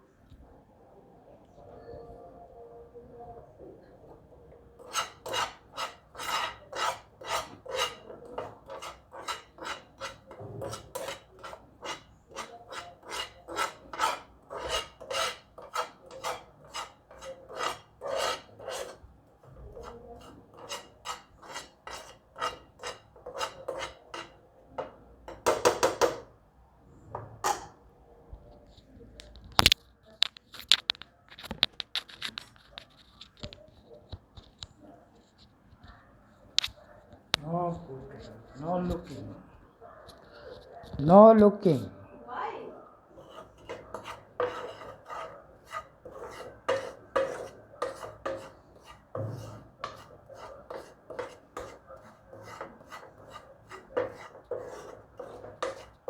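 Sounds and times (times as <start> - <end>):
spoon scraping a pan: 3.9 - 26.3, 27.2 - 27.8, 43.1 - 56.0.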